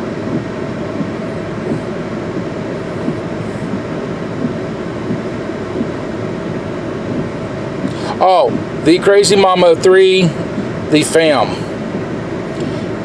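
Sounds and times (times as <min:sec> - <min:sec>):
car engine running: 0:00.0 - 0:13.0
faint steady hum: 0:00.0 - 0:13.0
heavy rain on car: 0:00.0 - 0:13.0.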